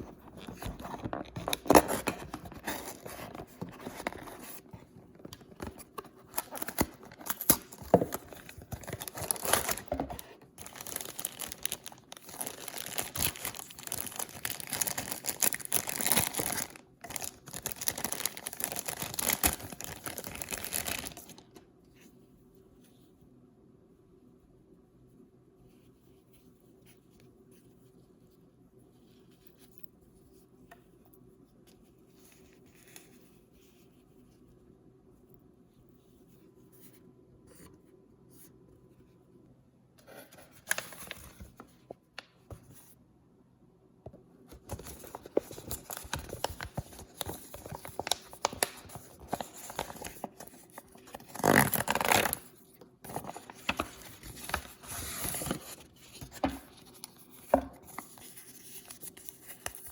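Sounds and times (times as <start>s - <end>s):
packaging crinkling and tearing: 0.0s - 21.5s, 44.5s - 59.9s.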